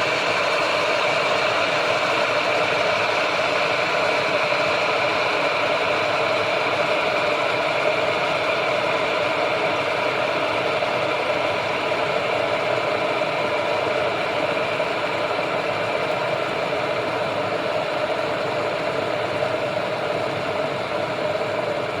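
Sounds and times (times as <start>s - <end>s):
water boiling in kettle: 0.0s - 22.0s.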